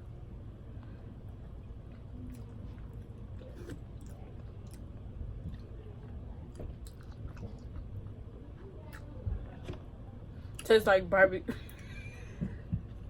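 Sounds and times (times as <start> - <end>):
steady low rumble: 0.0 - 13.0
person chewing and biting: 5.5 - 9.1.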